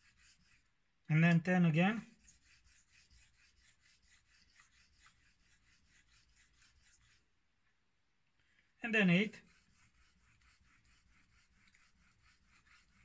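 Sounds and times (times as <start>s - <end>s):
razor blade rasping on whetstone: 0.0s - 0.7s, 1.9s - 7.2s, 9.3s - 13.0s.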